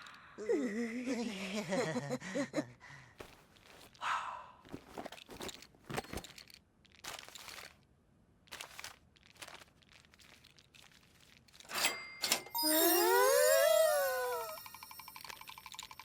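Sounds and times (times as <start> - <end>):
crunching and rustling: 3.2 - 4.0, 4.7 - 11.7.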